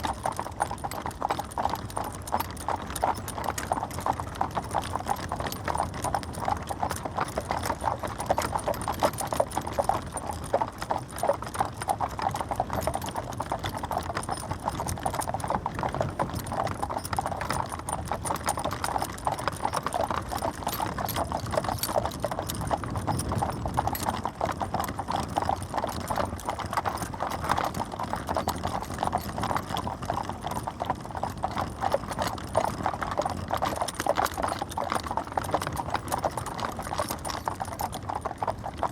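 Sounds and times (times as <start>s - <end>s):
hooves clip-clopping: 0.0s - 38.9s
low rumble of carriage: 0.0s - 38.9s.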